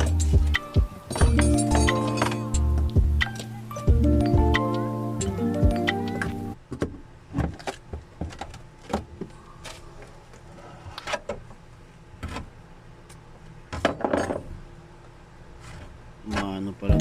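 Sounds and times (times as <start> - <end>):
tools and metal parts clinking: 1.1 - 2.7.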